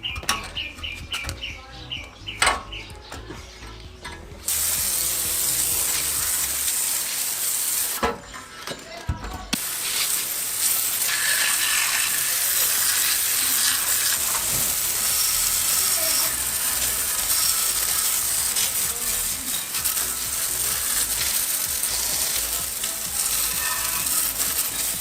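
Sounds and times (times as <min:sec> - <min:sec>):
spray paint hissing: 0:04.5 - 0:08.1, 0:09.6 - 0:25.0.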